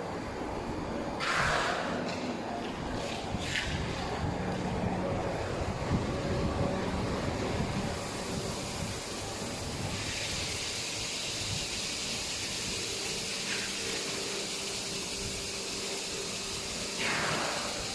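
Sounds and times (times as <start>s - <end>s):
air compressor hum and hiss: 0.0s - 17.9s.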